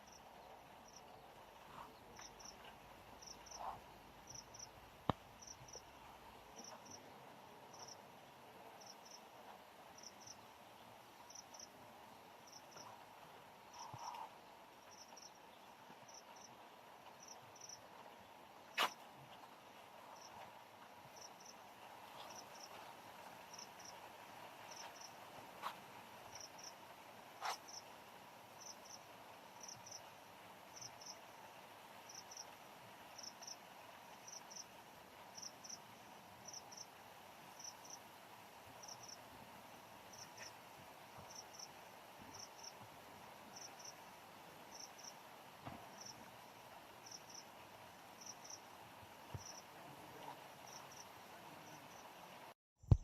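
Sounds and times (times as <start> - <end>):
insect chirping: 0.0 - 4.8, 5.4 - 7.0, 7.7 - 8.0, 10.0 - 10.5, 11.3 - 11.7, 12.4 - 13.0, 13.7 - 15.4, 16.0 - 16.6, 17.2 - 17.8, 20.1 - 20.4, 21.1 - 26.8, 27.4 - 27.8, 28.6 - 29.0, 29.6 - 30.1, 30.7 - 31.2, 32.1 - 32.5, 33.2 - 33.6, 34.2 - 34.7, 35.4 - 36.9, 37.6 - 38.0, 38.8 - 39.2, 40.1 - 40.6, 41.2 - 42.8, 43.5 - 45.2, 45.9 - 52.2.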